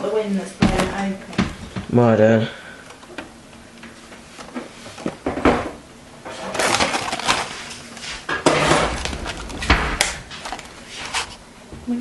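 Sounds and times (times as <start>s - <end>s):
household objects clattering: 4.4s - 11.9s.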